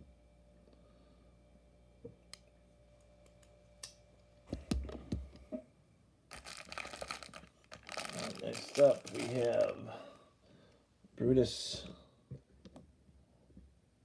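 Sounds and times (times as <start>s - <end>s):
plastic rustling and crinkling: 6.3s - 10.2s.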